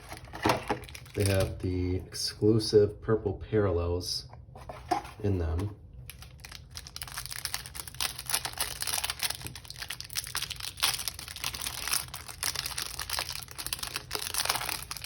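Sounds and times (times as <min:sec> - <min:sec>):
plastic wrapping crinkling and tearing: 0:00.0 - 0:01.8, 0:06.0 - 0:15.0.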